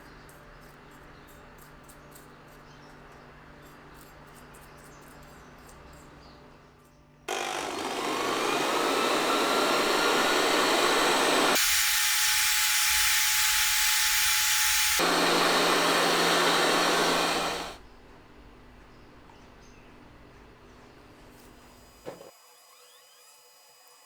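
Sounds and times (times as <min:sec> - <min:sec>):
rising machine whine: 0:07.3 - 0:17.8.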